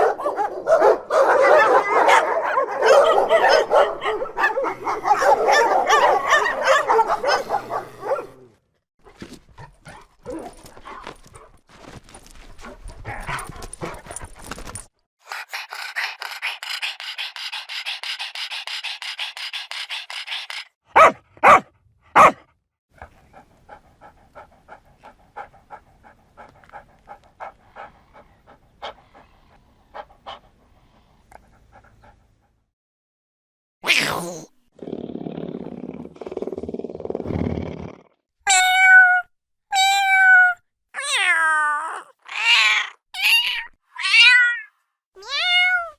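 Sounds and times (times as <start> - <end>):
dog barking and yipping: 0.0 - 8.5, 9.6 - 11.1, 17.9 - 22.4
dog panting: 11.0 - 20.8, 23.0 - 32.6.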